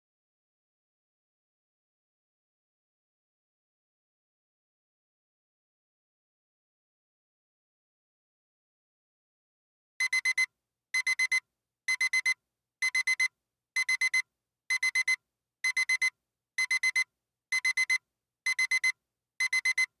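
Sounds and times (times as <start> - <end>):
alarm clock beeping: 10.0 - 10.4, 11.0 - 17.0, 17.6 - 19.9.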